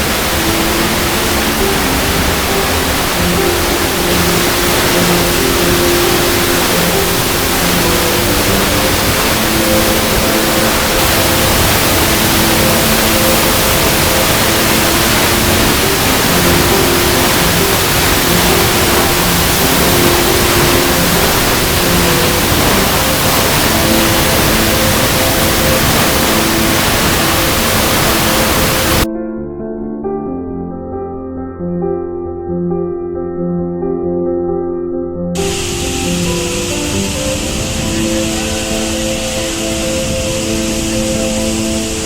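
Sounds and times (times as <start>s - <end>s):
soft held music notes: 0.0s - 29.1s
waterfall rushing: 0.0s - 29.1s, 35.4s - 42.0s.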